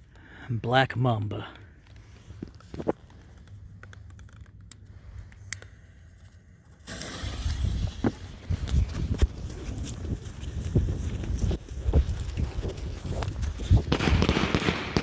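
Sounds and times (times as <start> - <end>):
firework pops and crackles: 6.8 - 15.0
firework hissing: 6.9 - 8.5.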